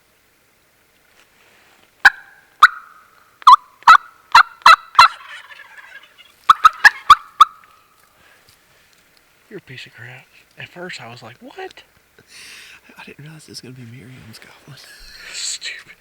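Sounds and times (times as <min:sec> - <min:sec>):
turkey calling: 0:02.0 - 0:08.0.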